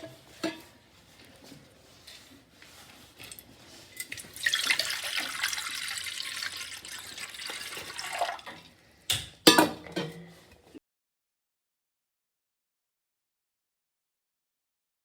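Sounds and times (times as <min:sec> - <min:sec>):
water running from tap: 0:04.0 - 0:08.6.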